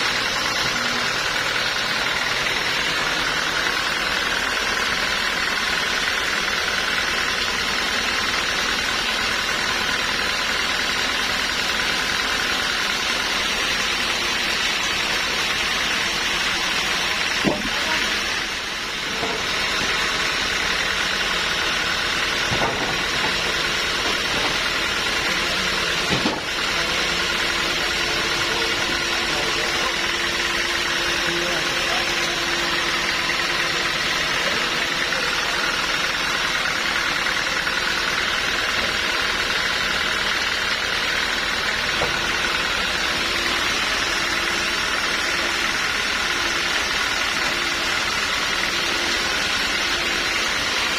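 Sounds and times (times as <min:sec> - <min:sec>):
sawmill engine running: 0:00.0 - 0:50.9
sharp knocks: 0:17.4 - 0:17.8.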